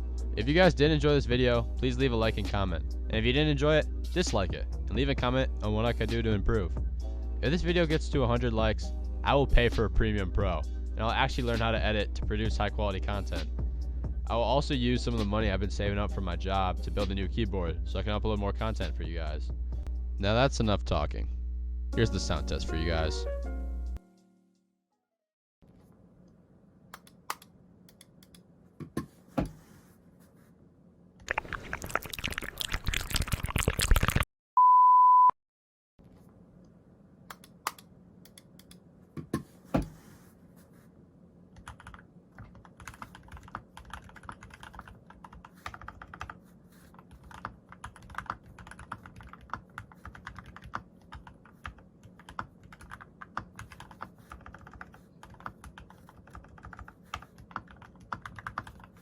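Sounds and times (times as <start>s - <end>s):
steady beep: 34.6s - 35.4s
mechanical keyboard typing: 41.6s - 46.4s, 47.0s - 59.0s.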